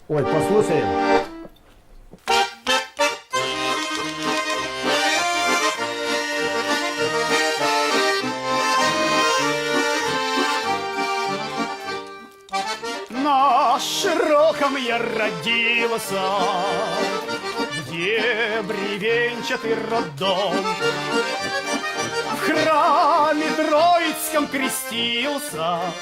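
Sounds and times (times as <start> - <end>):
accordion folk music: 0.0 - 26.0.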